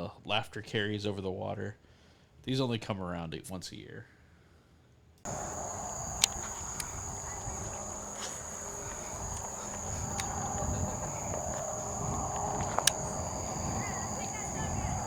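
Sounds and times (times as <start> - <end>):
sharp clicks: 5.3 - 14.5
low outdoor rumble: 5.3 - 15.0
night insects trilling: 5.3 - 15.0.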